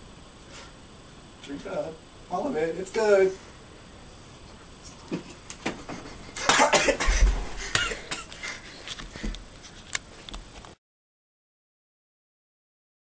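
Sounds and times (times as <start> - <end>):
person coughing: 6.4 - 8.3.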